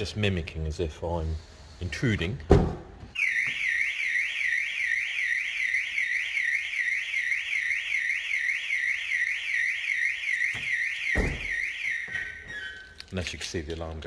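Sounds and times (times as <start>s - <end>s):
warbling car alarm siren: 3.2s - 12.9s.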